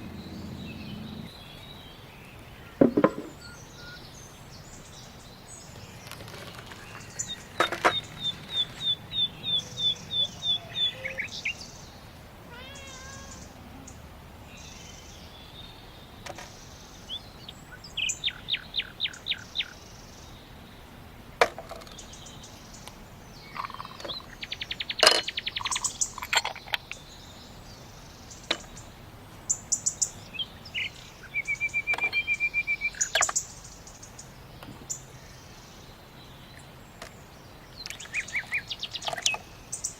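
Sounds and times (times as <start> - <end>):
bird trilling: 0.0 - 1.7, 2.4 - 4.2, 6.6 - 11.6
songbirds calling: 0.0 - 39.9.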